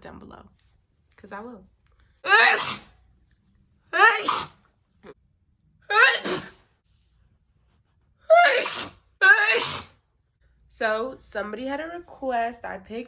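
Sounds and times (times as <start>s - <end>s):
woman sneezing: 2.2s - 3.0s, 3.9s - 4.6s, 5.9s - 6.6s, 8.3s - 10.0s.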